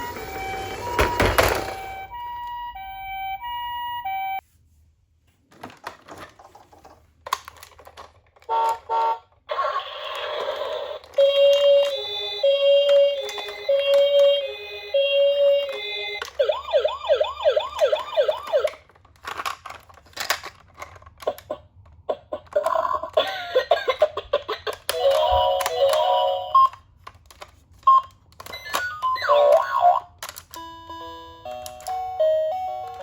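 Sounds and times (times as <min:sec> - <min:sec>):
toy electronic siren: 0:08.6 - 0:18.8, 0:28.5 - 0:33.0.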